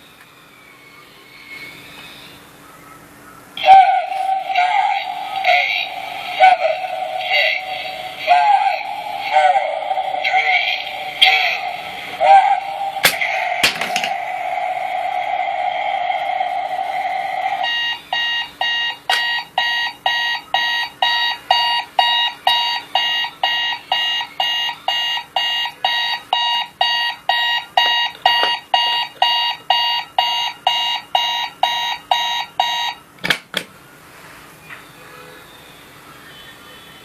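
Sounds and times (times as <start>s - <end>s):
steady electronic tone: 3.6s - 20.7s
alarm clock electronic beeping: 4.2s - 33.0s.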